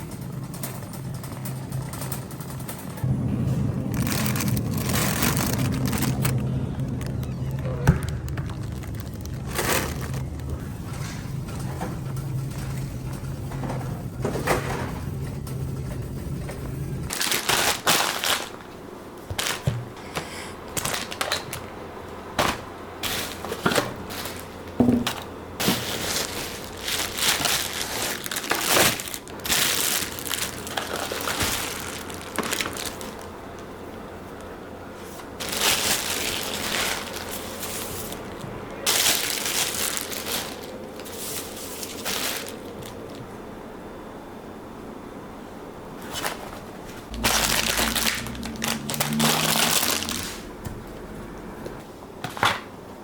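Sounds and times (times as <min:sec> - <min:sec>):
steady low hum: 0:00.0 - 0:53.0
packaging crinkling and rustling: 0:03.5 - 0:11.0, 0:17.1 - 0:21.7, 0:22.4 - 0:43.3, 0:46.0 - 0:50.6.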